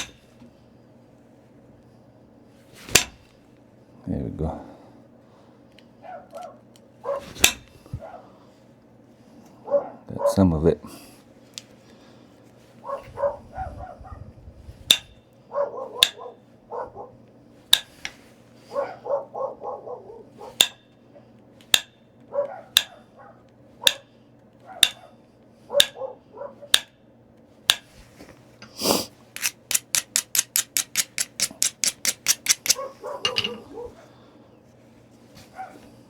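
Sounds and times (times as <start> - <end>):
sharp stone clicks: 29.4 - 32.8
dog whining and yipping: 32.8 - 34.0.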